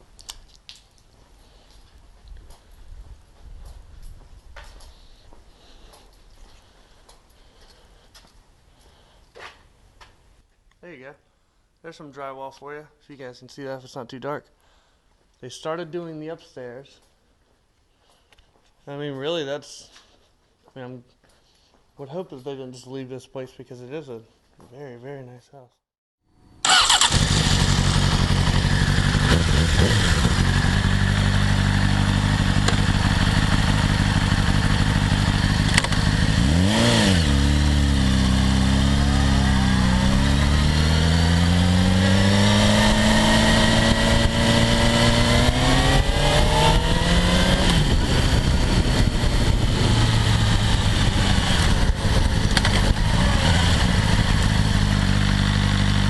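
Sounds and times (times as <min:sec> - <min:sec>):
motorcycle engine running: 0:26.7 - 0:56.0
wind noise: 0:42.3 - 0:54.3.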